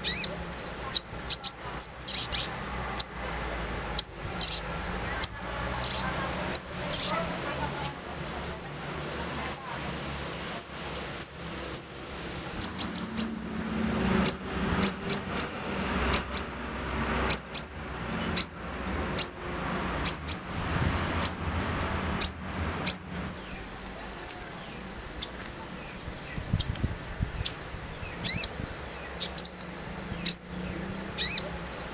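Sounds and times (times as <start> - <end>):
bird chirping sharply: 0.0 - 3.2, 4.0 - 7.2, 10.6 - 13.4, 14.2 - 16.6, 17.3 - 17.8, 19.2 - 19.4, 20.0 - 20.5, 21.2 - 21.5, 22.2 - 23.6, 26.2 - 29.6, 30.2 - 31.4.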